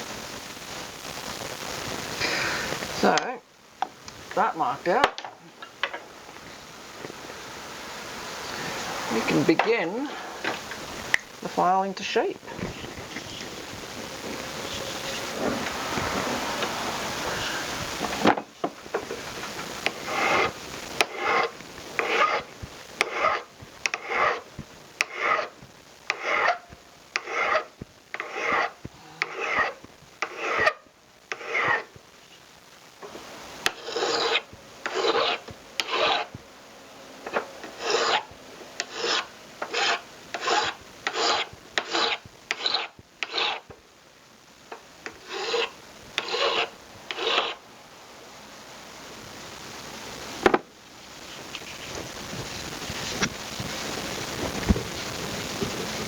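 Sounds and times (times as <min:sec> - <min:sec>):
hand file strokes on metal: 0:20.1 - 0:22.4, 0:23.0 - 0:24.4, 0:25.0 - 0:25.5, 0:26.1 - 0:26.6, 0:27.2 - 0:31.8, 0:33.6 - 0:36.4, 0:37.3 - 0:43.6, 0:45.2 - 0:47.6.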